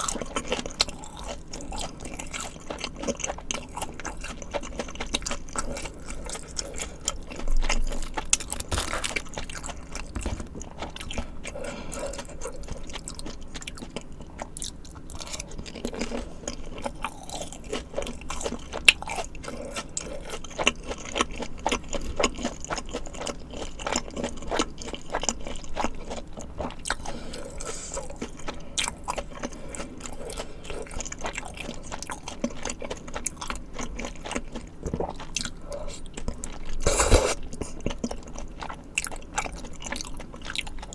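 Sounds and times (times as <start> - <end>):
chewing and crunching food: 0.0 - 40.9
wet mouth clicks: 36.8 - 37.7.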